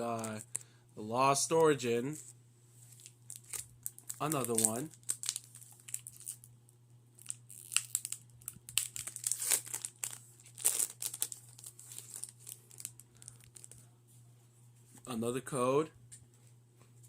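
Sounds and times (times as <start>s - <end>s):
foil wrapper crinkling and tearing: 2.9s - 6.5s, 7.2s - 13.8s.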